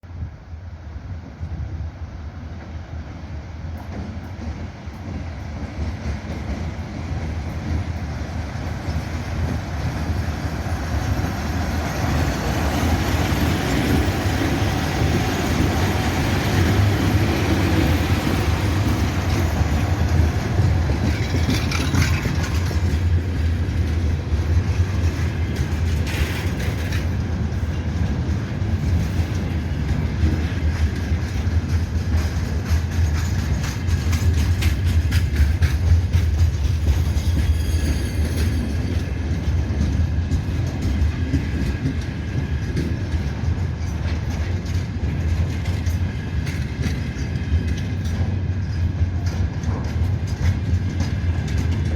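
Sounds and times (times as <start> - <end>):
freight train rumbling past: 0.0 - 51.9
high-pitched train screeches: 37.0 - 39.2.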